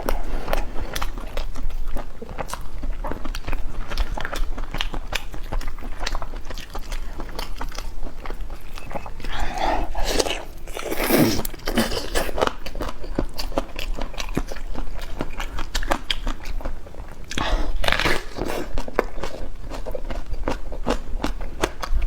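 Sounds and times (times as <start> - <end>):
biting and chewing food: 0.0 - 22.0.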